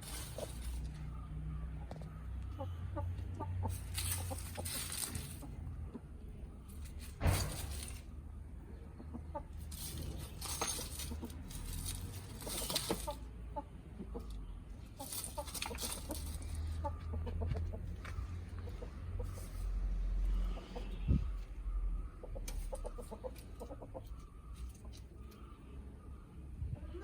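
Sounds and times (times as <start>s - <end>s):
rustling: 0.0s - 1.1s, 3.6s - 5.6s, 6.6s - 8.2s, 9.6s - 13.3s, 14.8s - 20.6s
chickens clucking: 0.1s - 6.5s, 8.7s - 25.5s.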